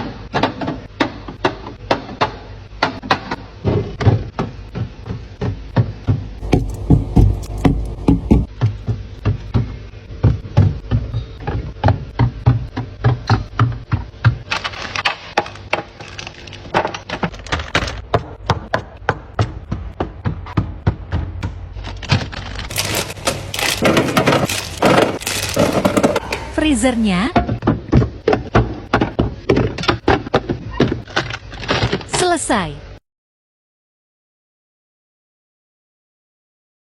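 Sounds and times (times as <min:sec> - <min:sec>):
packages rustling: 0:14.4 - 0:18.2, 0:21.8 - 0:26.3
containers clacking being stacked: 0:21.8 - 0:26.5.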